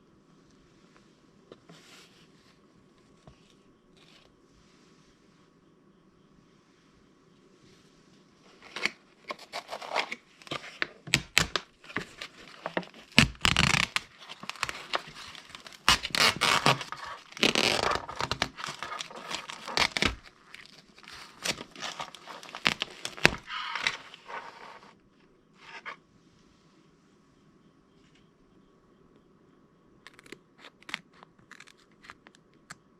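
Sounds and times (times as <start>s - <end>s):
crinkly packaging crackling and ripping: 8.5s - 24.9s, 30.1s - 32.4s.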